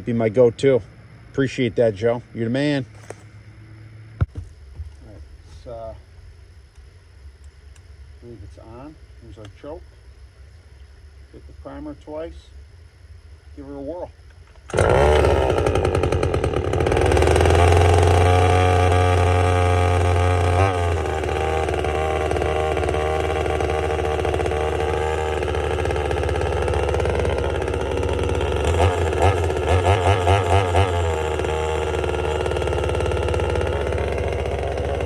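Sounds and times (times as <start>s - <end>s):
chainsaw engine running: 14.5s - 35.0s
chainsaw throttle revs: 14.6s - 35.0s.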